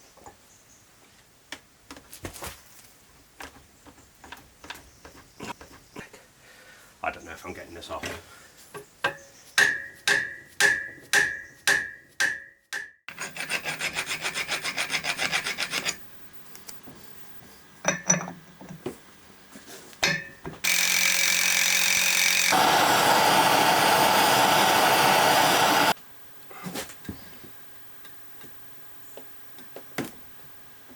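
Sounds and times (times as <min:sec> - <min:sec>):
power tool noise: 0:20.6 - 0:26.0.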